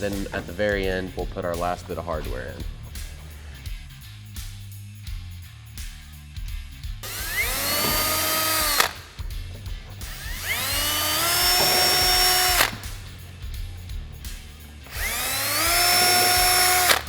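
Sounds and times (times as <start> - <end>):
background music: 0.0 - 17.0
power drill whining: 7.0 - 9.3, 10.0 - 13.2, 14.6 - 17.0.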